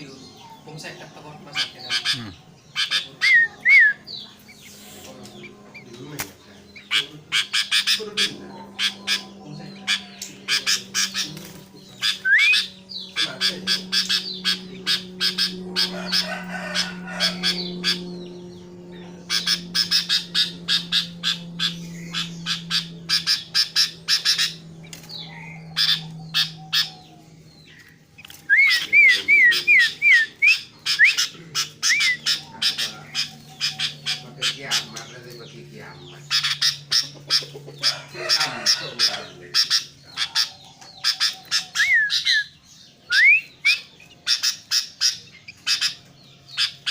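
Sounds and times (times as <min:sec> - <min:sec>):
bird harsh chattering calls: 0:00.0 - 0:46.9
steady low hum: 0:00.0 - 0:46.9
bird rising whistles: 0:12.2 - 0:12.7, 0:43.1 - 0:43.9.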